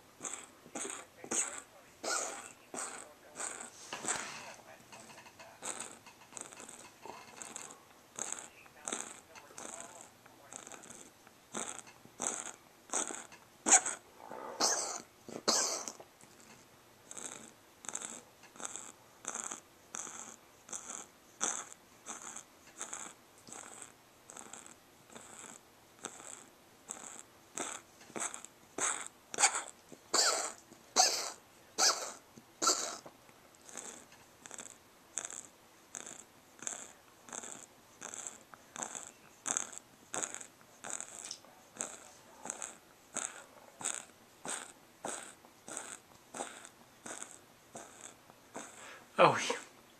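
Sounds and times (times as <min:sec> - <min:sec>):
cat coughing: 0:00.2 - 0:04.2, 0:14.6 - 0:16.0, 0:28.8 - 0:33.0.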